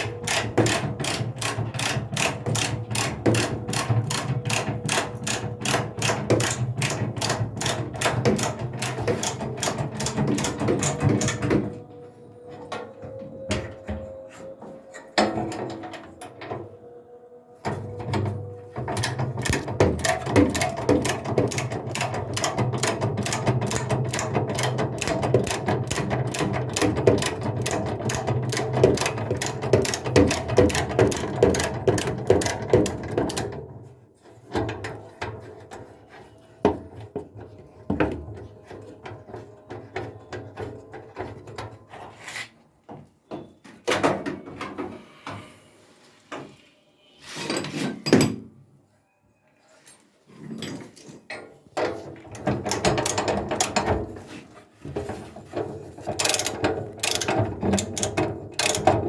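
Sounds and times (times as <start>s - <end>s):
knocks and clatter of parts: 0.0s - 16.8s, 17.6s - 42.2s, 42.8s - 45.4s, 50.4s - 59.0s
ratchet wrench clicking: 56.2s - 59.0s.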